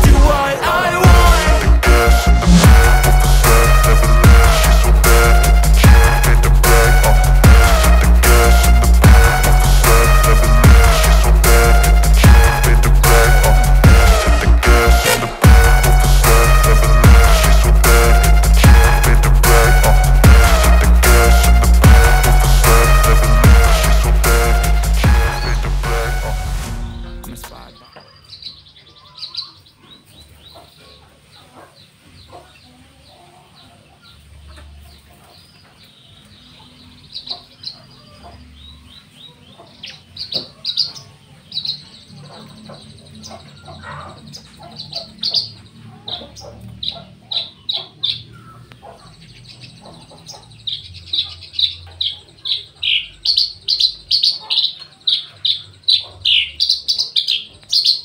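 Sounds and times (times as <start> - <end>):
bird chirping: 26.6 - 58.0.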